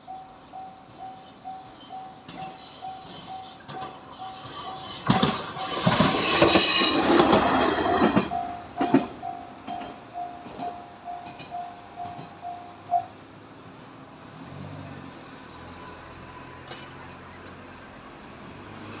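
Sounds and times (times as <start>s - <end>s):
level-crossing bell clanging: 0.0s - 13.0s
road traffic rumble: 7.0s - 19.0s.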